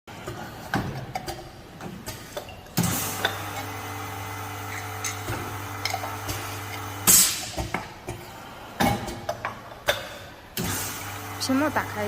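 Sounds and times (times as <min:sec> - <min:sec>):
steady motor hum: 0:02.8 - 0:09.0, 0:10.5 - 0:12.0.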